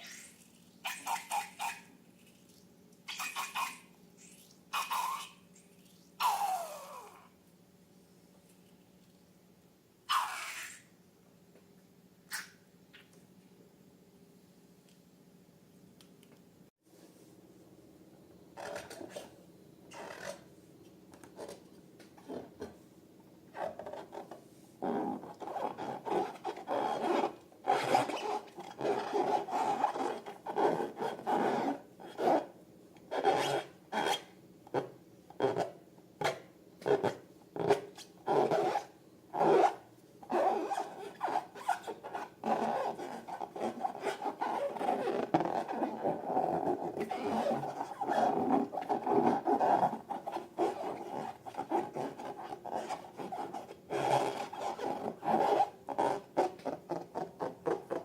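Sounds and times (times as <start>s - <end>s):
hands rubbing rubber balloons: 35.4s - 58.0s.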